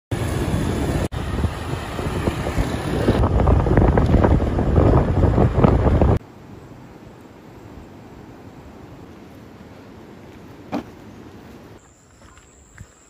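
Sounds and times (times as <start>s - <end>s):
wind buffeting microphone: 0.2s - 6.2s.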